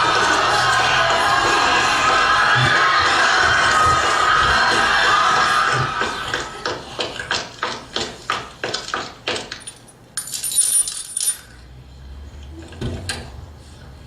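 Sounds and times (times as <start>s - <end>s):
keys jingling: 9.5s - 11.6s.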